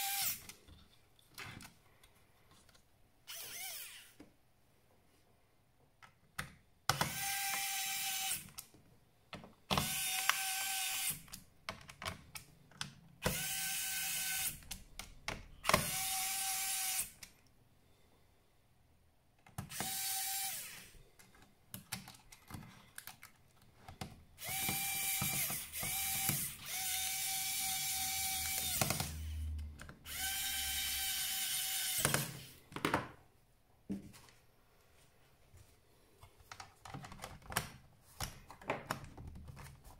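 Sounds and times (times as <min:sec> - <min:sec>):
electric screwdriver whirring: 0:00.0 - 0:00.4, 0:03.3 - 0:04.2, 0:07.0 - 0:08.5, 0:09.7 - 0:11.2, 0:13.2 - 0:14.6, 0:15.6 - 0:17.2, 0:19.7 - 0:20.9, 0:24.4 - 0:29.3, 0:30.0 - 0:32.5
screws and parts clicking: 0:00.0 - 0:04.2, 0:09.7 - 0:17.4, 0:19.4 - 0:32.5.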